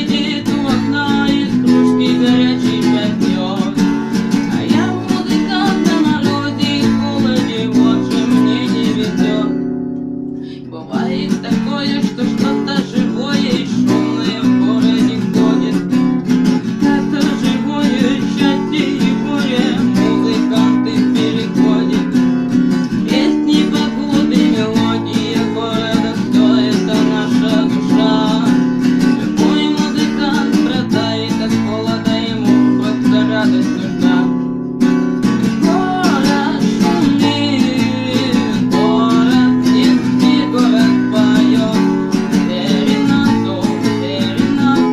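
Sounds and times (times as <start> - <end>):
acoustic guitar strumming: 0.0 - 44.9.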